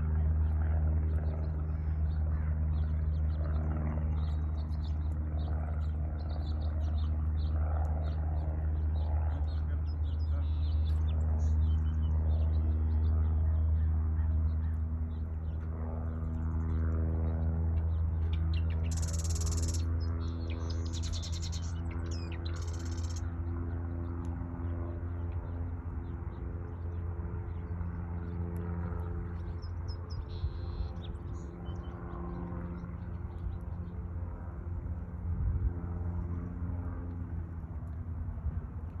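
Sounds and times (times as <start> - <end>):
steady low hum: 0.0 - 39.0
bird chirping: 18.2 - 23.3.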